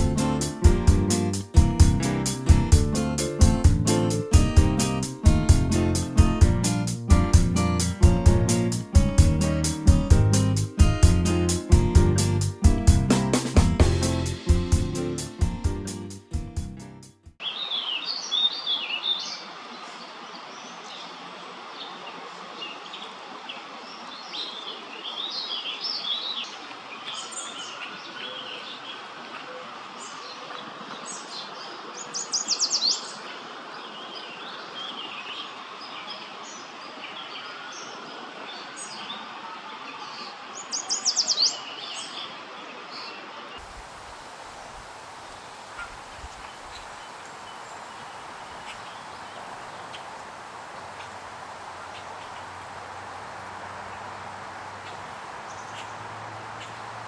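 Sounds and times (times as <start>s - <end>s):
outdoor background noise: 17.4s - 57.0s.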